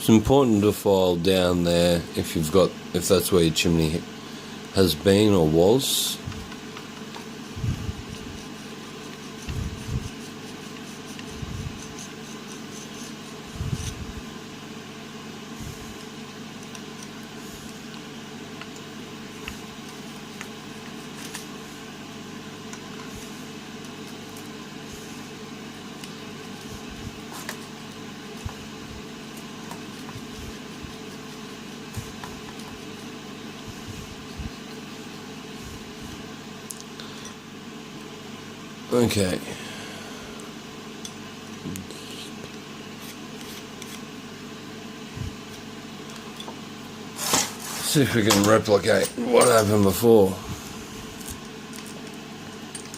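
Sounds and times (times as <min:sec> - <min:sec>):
steady mechanical hum: 0:00.0 - 0:52.9.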